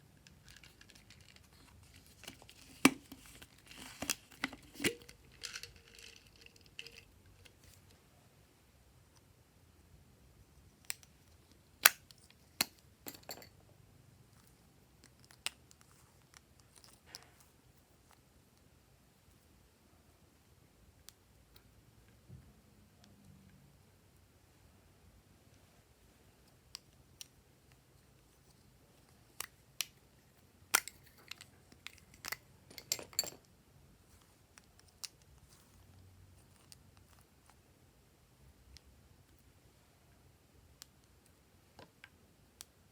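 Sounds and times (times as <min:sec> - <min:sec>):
clicks and taps of small objects: 0:30.7 - 0:33.5.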